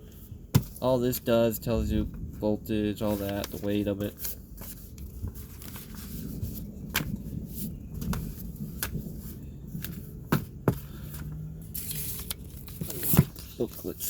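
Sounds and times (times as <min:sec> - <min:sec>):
paper rustling: 0:02.9 - 0:14.0.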